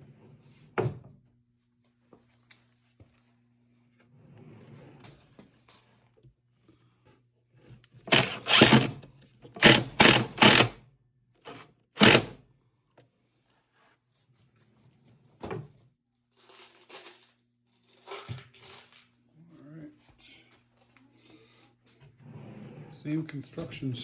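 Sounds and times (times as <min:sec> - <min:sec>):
cordless drill drilling into wood: 0:08.1 - 0:09.0, 0:09.6 - 0:10.8, 0:11.5 - 0:12.4.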